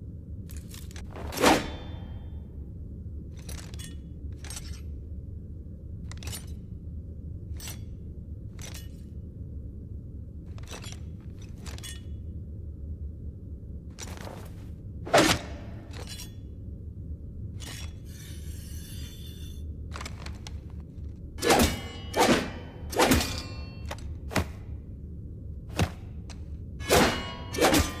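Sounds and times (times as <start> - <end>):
sword blade clanging: 15.2 - 16.5, 21.4 - 24.1, 26.8 - 28.0.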